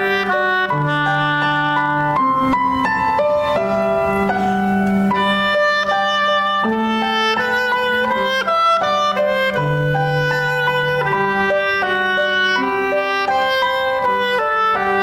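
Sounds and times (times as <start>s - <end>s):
instrumental music with held notes: 0.0s - 15.0s.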